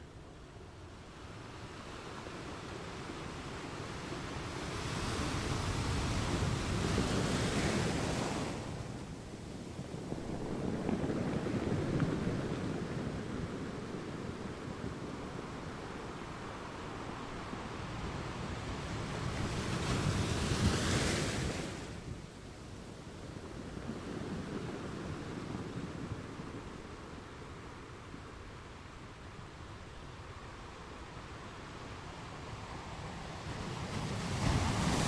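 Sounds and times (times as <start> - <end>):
ocean waves breaking on shore: 32.3 - 35.0.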